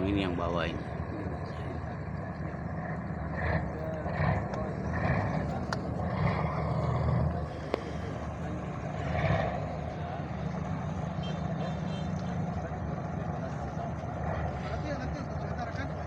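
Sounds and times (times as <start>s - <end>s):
faint voices: 0.0s - 16.0s
low engine rumble: 0.0s - 16.0s.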